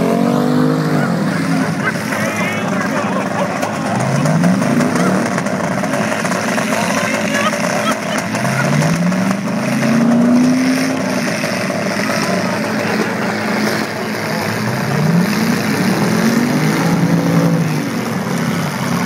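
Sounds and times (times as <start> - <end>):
car engines revving: 0.0 - 19.0
dense mechanical din: 1.8 - 16.4.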